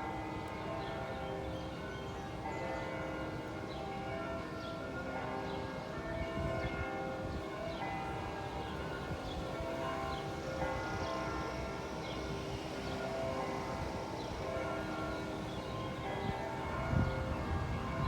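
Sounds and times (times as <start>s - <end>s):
church bells ringing: 0.0s - 18.0s
wind rumble on microphone: 6.0s - 7.4s, 16.2s - 18.0s.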